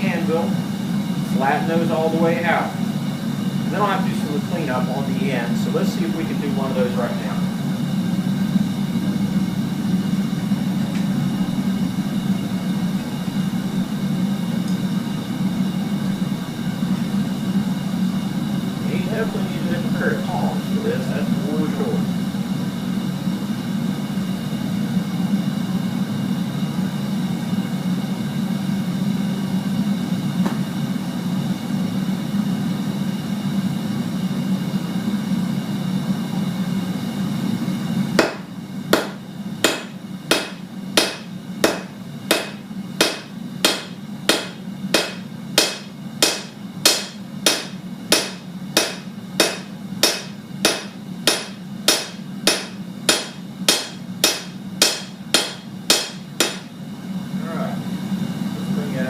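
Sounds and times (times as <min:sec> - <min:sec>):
forge burner roaring: 0:00.0 - 0:59.0
hammer striking steel on anvil: 0:38.2 - 0:56.7.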